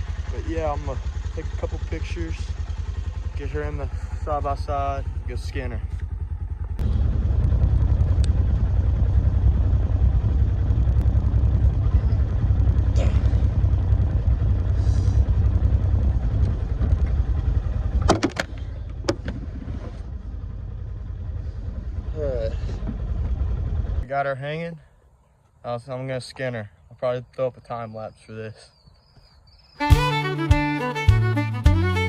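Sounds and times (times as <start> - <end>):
engine low rumble: 0.0 - 32.0
sharp clicks or knocks: 18.0 - 19.4.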